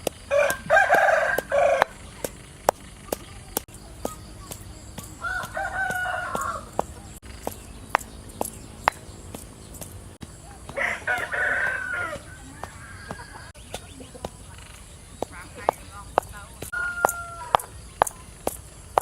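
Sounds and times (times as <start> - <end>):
sharp taps: 0.0 - 19.0
rooster crowing: 0.2 - 2.3, 5.1 - 7.2, 10.7 - 13.5, 16.7 - 17.7.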